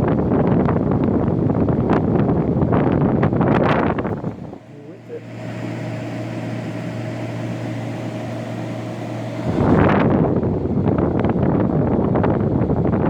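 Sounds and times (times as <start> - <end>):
air conditioner humming: 3.4 - 10.8.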